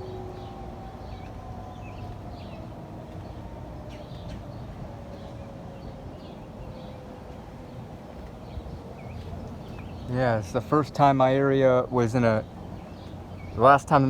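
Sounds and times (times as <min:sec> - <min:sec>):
tornado siren winding down: 0:00.0 - 0:09.5
birds chirping: 0:00.0 - 0:14.0.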